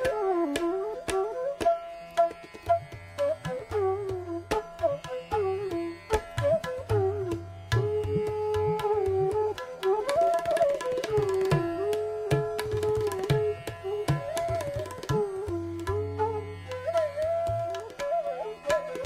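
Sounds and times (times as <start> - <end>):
bamboo flute melody: 0.0 - 19.0
tabla strokes: 0.0 - 19.0.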